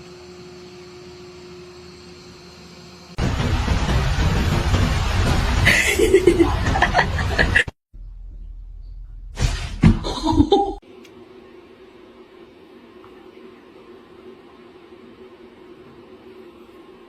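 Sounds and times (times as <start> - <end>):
sharp knocks: 3.2 - 7.7
steady rushing noise: 3.2 - 7.7
people laughing: 5.6 - 7.7.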